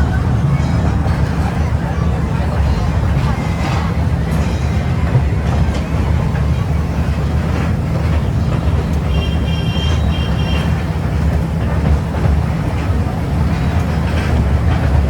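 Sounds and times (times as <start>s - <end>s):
toy train rumbling: 0.0s - 15.0s.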